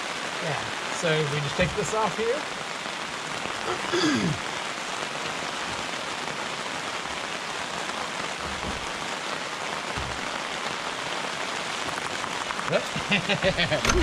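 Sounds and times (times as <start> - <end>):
steady rain falling: 0.0 - 14.0
faint low thuds: 8.4 - 9.2, 10.0 - 10.5.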